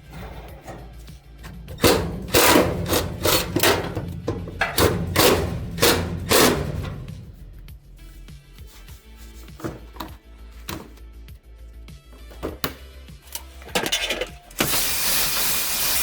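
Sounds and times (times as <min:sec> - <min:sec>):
sharp knocks and clunks: 0:00.0 - 0:07.3
background music: 0:00.0 - 0:16.0.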